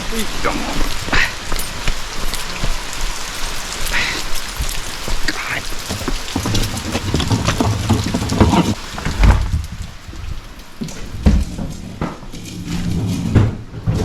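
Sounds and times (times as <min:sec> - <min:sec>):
heavy rain: 0:00.0 - 0:14.0
knocks and thud: 0:04.5 - 0:14.0.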